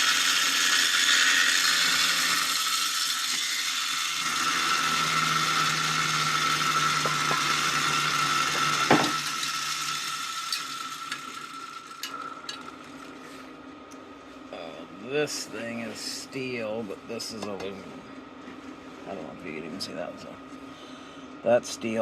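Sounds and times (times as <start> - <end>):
ratcheting bell mechanism whir: 0.0 - 12.7.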